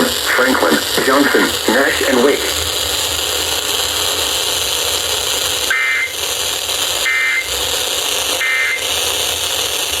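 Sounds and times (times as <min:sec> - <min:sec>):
radio hiss: 0:00.0 - 0:10.0
shrill two-tone digital bursts: 0:05.7 - 0:06.2, 0:08.4 - 0:08.8.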